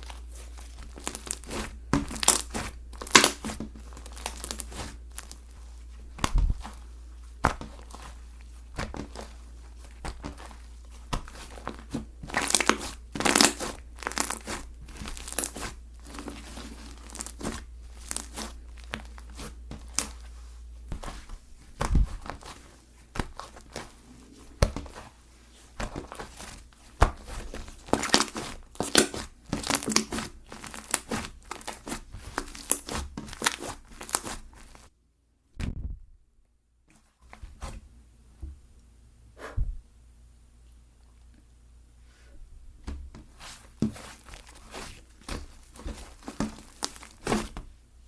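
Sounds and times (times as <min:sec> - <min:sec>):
slime crackling and popping: 0:00.0 - 0:05.5, 0:08.8 - 0:20.2, 0:25.8 - 0:34.9, 0:43.8 - 0:47.6.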